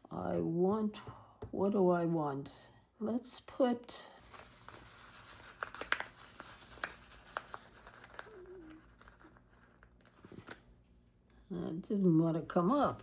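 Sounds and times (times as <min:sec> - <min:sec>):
faint hum: 0:00.0 - 0:13.0
sticker sheet rustling: 0:04.2 - 0:10.6.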